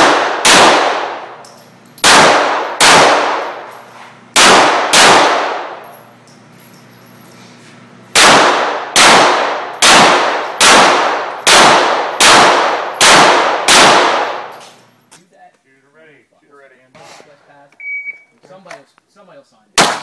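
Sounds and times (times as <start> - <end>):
pistol shots echoing: 0.0 - 1.4, 2.0 - 3.7, 4.3 - 5.8, 8.1 - 14.6, 19.8 - 20.0.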